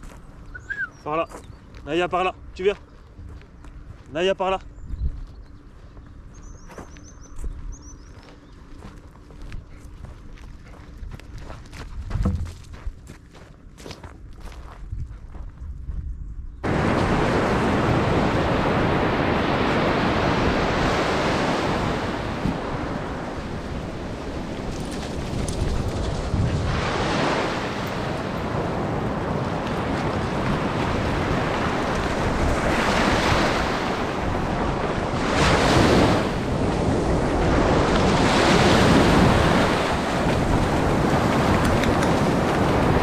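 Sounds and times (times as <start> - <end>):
wind buffeting microphone: 4.7 - 6.6, 9.4 - 13.1, 14.4 - 43.0
sea waves breaking on beach: 16.6 - 43.0.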